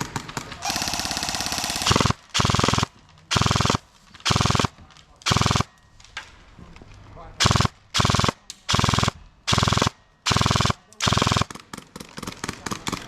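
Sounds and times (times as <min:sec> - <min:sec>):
airsoft gun firing bursts: 0:00.0 - 0:05.8, 0:07.4 - 0:13.0.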